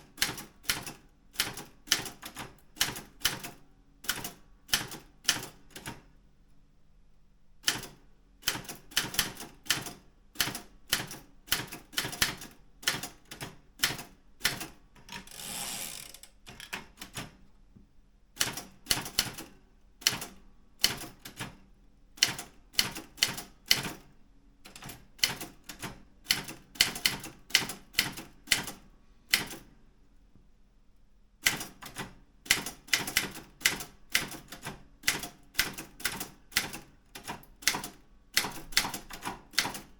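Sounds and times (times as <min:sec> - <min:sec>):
typewriter keys clicking: 0:31.5 - 0:39.9.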